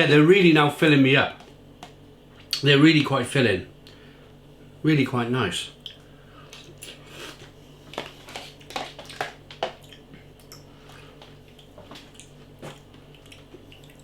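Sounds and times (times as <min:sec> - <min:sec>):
man chewing noodles: 0:05.8 - 0:14.0.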